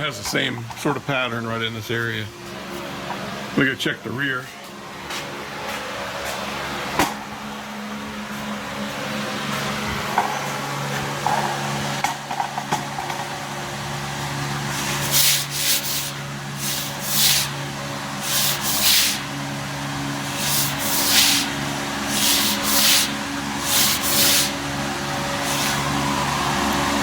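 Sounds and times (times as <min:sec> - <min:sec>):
steady low hum: 0:00.0 - 0:27.0
hand rubbing tire tread: 0:18.2 - 0:19.2, 0:20.2 - 0:27.0.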